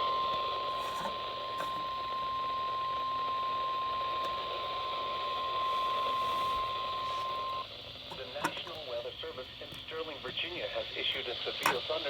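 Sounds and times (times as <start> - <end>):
steady alarm tone: 0.0 - 7.7
radio static: 5.6 - 12.0.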